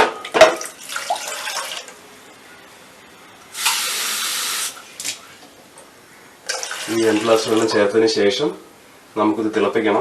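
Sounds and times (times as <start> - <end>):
water pouring into a pot: 0.6 - 2.0, 6.5 - 7.7.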